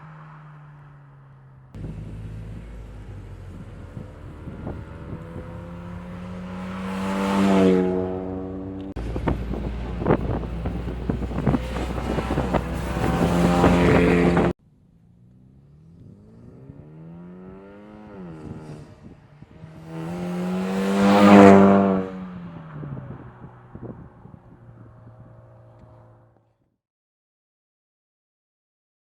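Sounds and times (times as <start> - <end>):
car driving past: 0.0 - 14.6, 15.2 - 26.4
car engine accelerating hard: 0.0 - 14.6, 15.2 - 26.4
wind buffeting: 1.8 - 14.6, 18.2 - 25.6.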